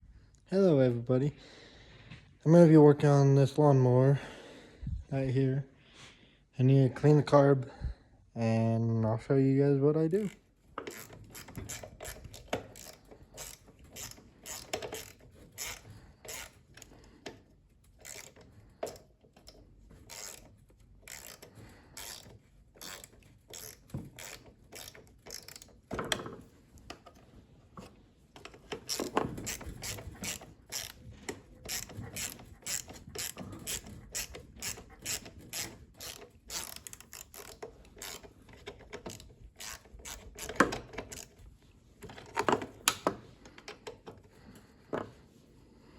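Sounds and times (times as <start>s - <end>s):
ratchet wrench clicking: 10.2s - 17.0s, 17.8s - 25.8s, 28.7s - 31.0s, 31.7s - 41.3s
knocks of tools being handled: 10.2s - 27.2s, 27.8s - 41.4s, 42.0s - 45.2s.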